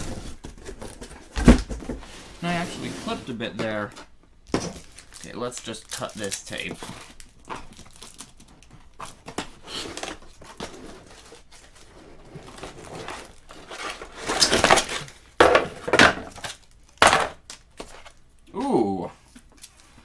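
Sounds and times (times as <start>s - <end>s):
cardboard rustling and knocking: 0.0s - 5.2s, 8.7s - 18.1s.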